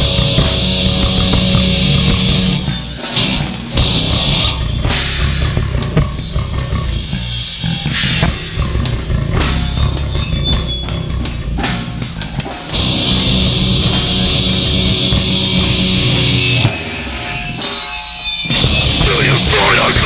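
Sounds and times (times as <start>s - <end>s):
live rock band: 0.0s - 20.0s.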